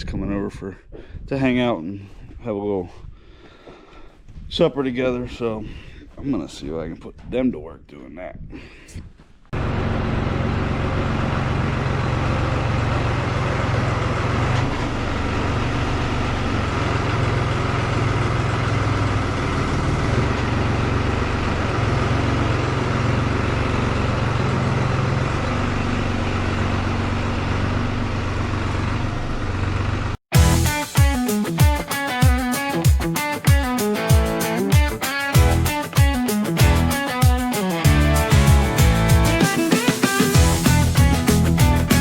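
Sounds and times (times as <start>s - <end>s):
farm machinery engine droning: 9.6s - 30.7s.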